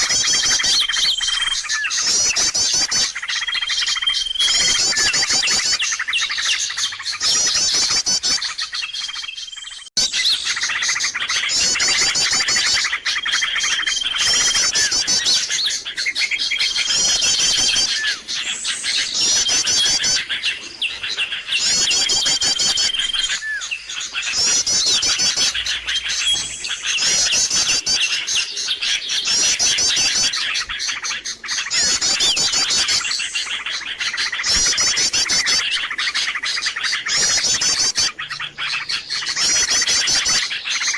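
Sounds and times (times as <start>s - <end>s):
high whistled bird notes: 0.0s - 40.9s
small birds chirping and trilling: 0.0s - 40.9s.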